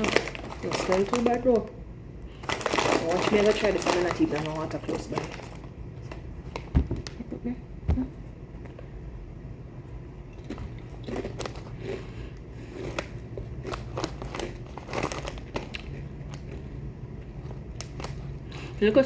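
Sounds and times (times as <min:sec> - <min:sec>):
tortilla chip crunching: 0:10.3 - 0:18.8.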